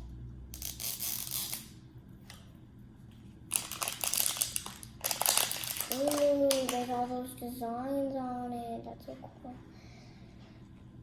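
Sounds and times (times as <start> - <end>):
packaging wrapper crinkling: 3.5 - 7.1.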